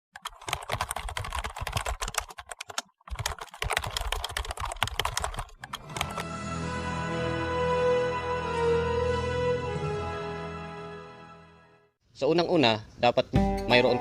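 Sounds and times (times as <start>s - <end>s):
computer keyboard typing: 0.2s - 6.3s
music: 5.8s - 12.0s, 13.3s - 14.0s.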